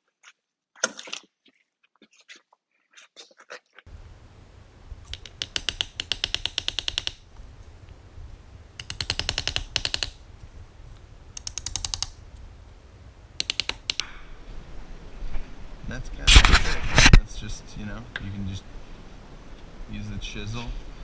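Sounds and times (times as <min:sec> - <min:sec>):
hammer tapping wood chisel: 0:03.9 - 0:14.0.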